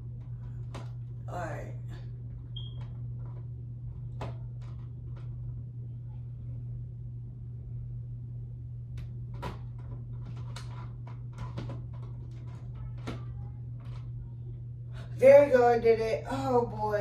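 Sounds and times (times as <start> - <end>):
steady low hum: 0.0 - 17.0
plastic clicks and knocks: 9.0 - 14.0.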